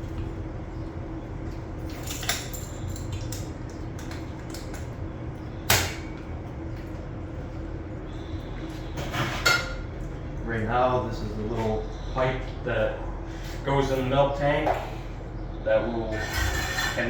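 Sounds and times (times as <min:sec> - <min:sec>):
low machine hum: 0:00.0 - 0:17.0
milking equipment clanking: 0:16.0 - 0:17.0.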